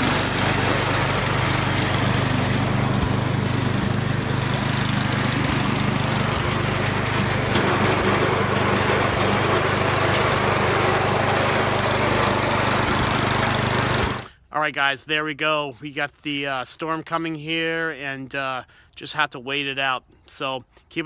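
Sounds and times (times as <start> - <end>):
snowblower engine running: 0.0 - 14.3.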